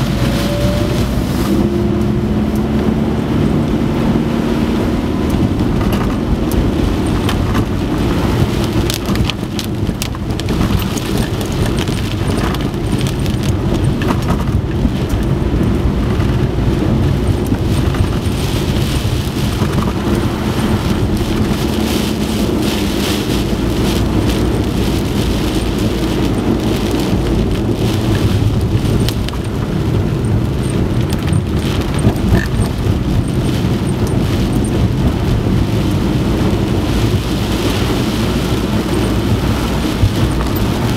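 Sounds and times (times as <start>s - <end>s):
heavy rain pelting down: 0.0s - 40.9s.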